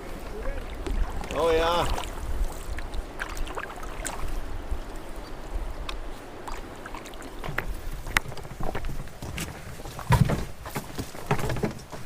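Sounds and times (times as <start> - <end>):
paddle splashes: 0.0 - 12.0
dripping water: 0.3 - 8.4.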